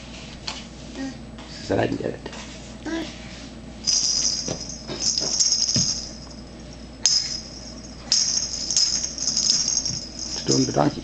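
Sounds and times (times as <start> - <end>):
small bell jingling: 3.8 - 11.0.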